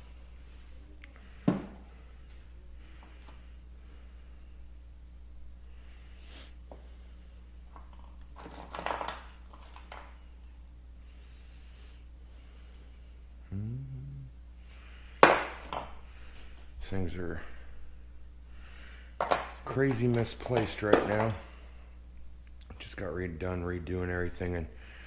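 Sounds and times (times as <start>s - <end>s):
steady low hum: 0.0s - 25.0s
metal tools clattering: 7.8s - 10.2s, 19.2s - 21.6s
workshop handling noise: 19.2s - 21.5s.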